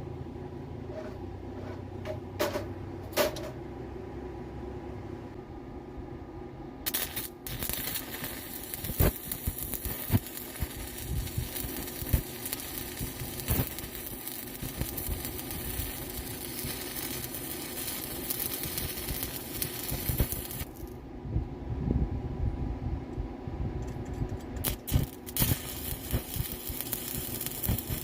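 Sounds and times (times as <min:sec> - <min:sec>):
welding arc crackling: 0:06.8 - 0:21.0, 0:24.5 - 0:28.0.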